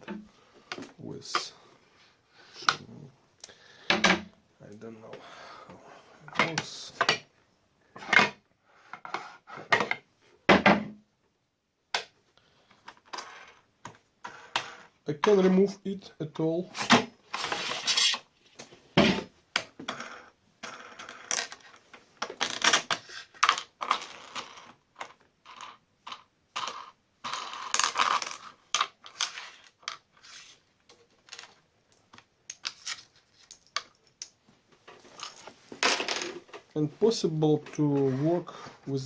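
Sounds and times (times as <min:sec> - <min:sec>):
metal parts clicking and scraping: 0:31.2 - 0:36.6.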